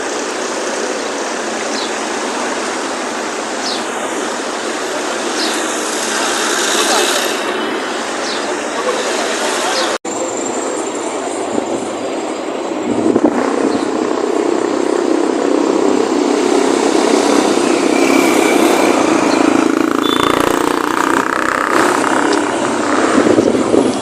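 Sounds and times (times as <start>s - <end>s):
vehicle engine and road noise: 0.0s - 24.0s.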